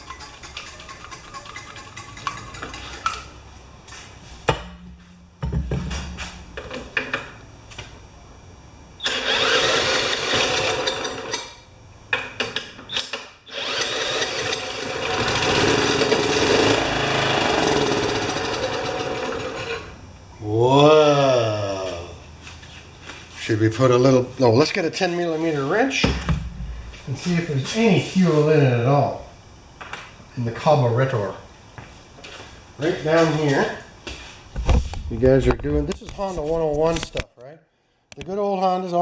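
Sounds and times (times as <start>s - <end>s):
lawn mower engine cranking: 9.0s - 11.5s, 13.0s - 19.9s.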